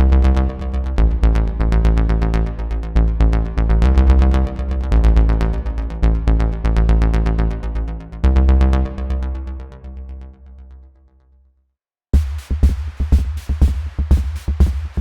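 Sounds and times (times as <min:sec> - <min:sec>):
held synth bass line: 0:00.0 - 0:10.4.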